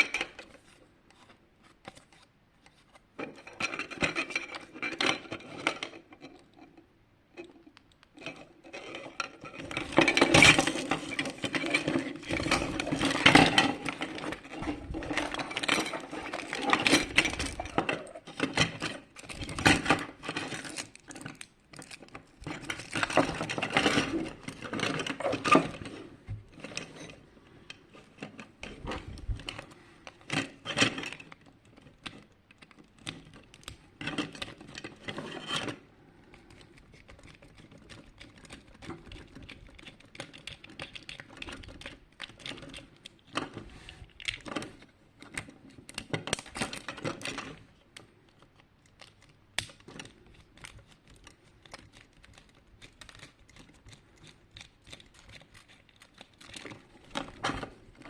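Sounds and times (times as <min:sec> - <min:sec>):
plastic parts clicking and rustling: 0:00.0 - 0:58.0.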